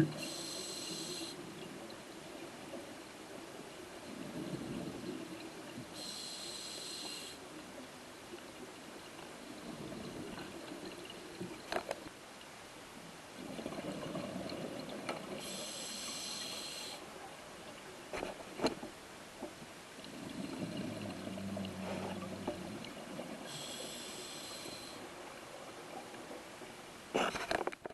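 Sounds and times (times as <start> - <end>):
regulator hissing inhale: 0.2 - 1.4, 6.0 - 7.4, 15.4 - 17.0, 23.5 - 25.0.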